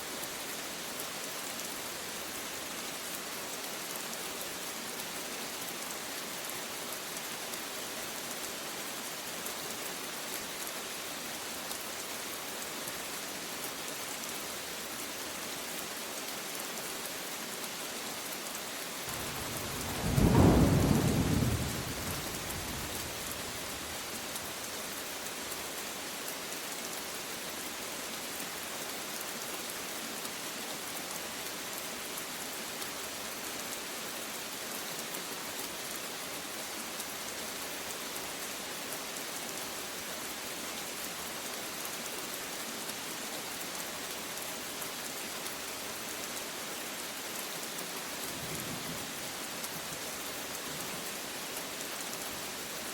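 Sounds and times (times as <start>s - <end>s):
steady rain falling: 0.0s - 52.9s
thunder clap rumbling: 19.1s - 23.6s.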